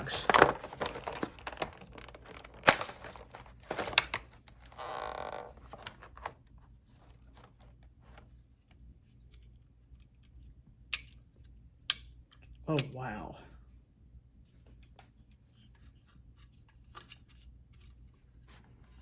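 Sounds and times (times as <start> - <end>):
cardboard and plastic crinkling: 0.0 - 8.2.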